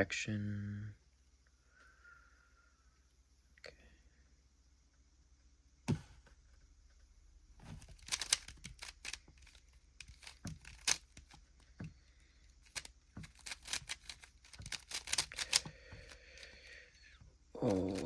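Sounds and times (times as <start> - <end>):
puzzle cube plastic clicks: 7.7 - 16.8, 17.6 - 18.0.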